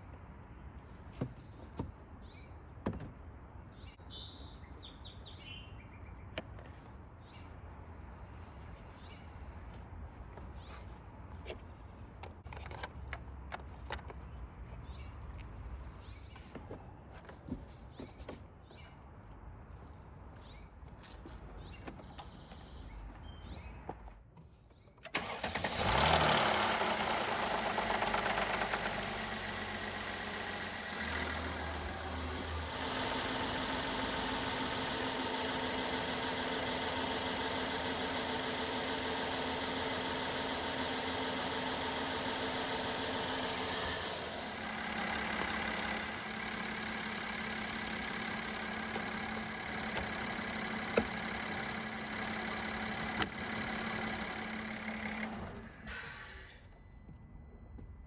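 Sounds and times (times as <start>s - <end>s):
car engine starting and idling: 25.0s - 57.8s.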